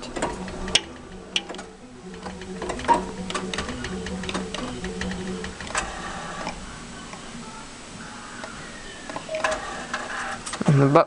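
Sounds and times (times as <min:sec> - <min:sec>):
sharp mechanical clicks: 0:00.0 - 0:07.2
claw machine motor hum: 0:00.0 - 0:11.0.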